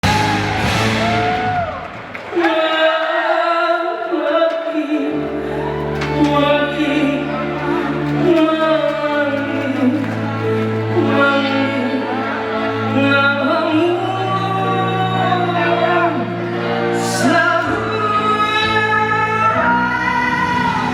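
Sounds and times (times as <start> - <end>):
band accompaniment: 0.0 - 1.9, 5.0 - 13.0
person singing pop song: 2.3 - 20.9.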